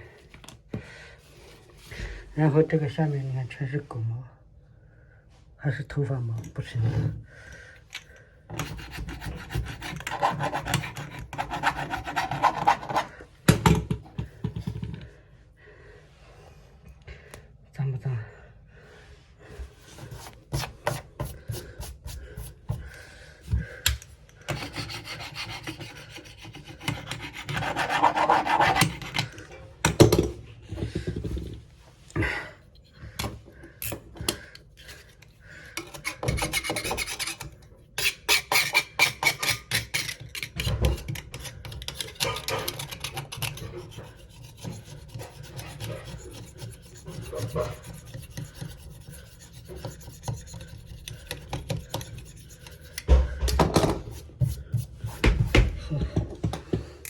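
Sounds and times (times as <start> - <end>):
scrubbing washing machine rim: 42.2 - 52.9.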